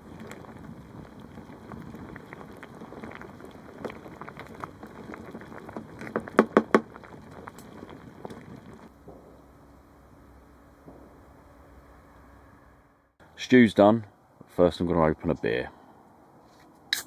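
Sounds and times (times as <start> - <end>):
stew bubbling and popping: 0.0 - 10.3.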